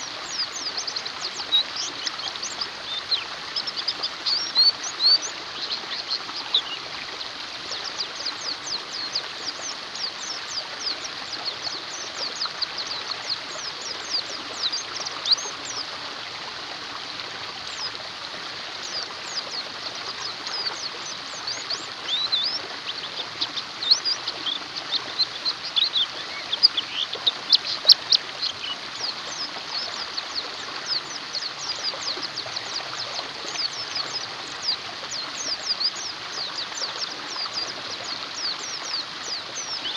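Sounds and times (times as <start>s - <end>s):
birds chirping and twittering: 0.0s - 16.4s, 17.4s - 39.9s
flowing water: 0.0s - 39.9s.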